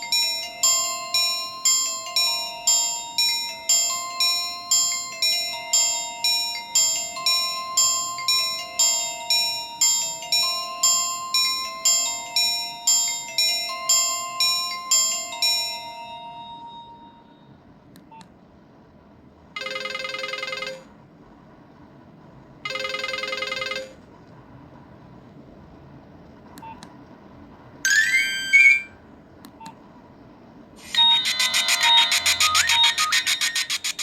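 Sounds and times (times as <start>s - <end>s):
phone ringtone melody: 0.0s - 17.5s, 19.6s - 20.9s, 22.6s - 24.0s, 27.9s - 29.0s, 30.8s - 34.0s
rising chirpy tone: 27.9s - 29.0s, 30.8s - 34.0s
buzzing electronic tones: 30.8s - 34.0s.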